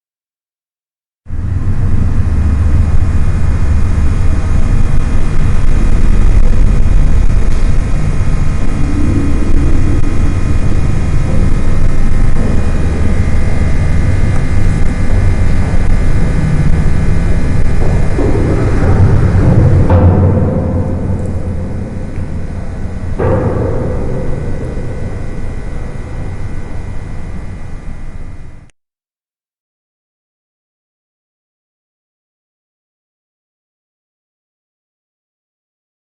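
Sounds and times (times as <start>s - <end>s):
electric hum and low rumble: 1.3s - 28.7s
high whining tones: 1.4s - 28.7s.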